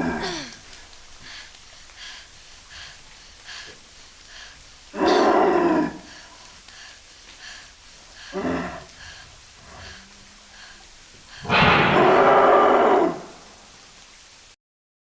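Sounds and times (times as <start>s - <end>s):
person imitating animal roar: 0.0s - 0.6s, 4.9s - 6.2s, 8.3s - 9.0s, 11.4s - 13.5s.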